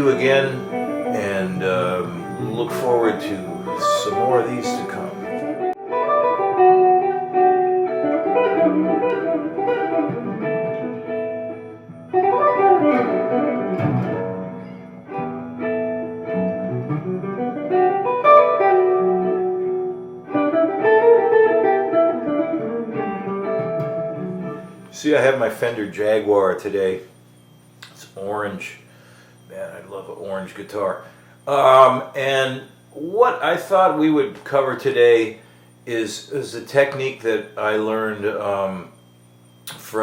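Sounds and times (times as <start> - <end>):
electric guitar playing jazz: 0.0 - 27.8.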